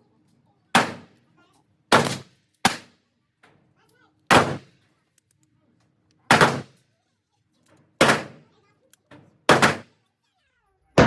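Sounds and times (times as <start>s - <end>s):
pistol shots echoing: 0.8s - 1.1s, 1.9s - 2.9s, 4.3s - 4.7s, 6.3s - 6.8s, 8.0s - 8.4s, 9.5s - 9.9s.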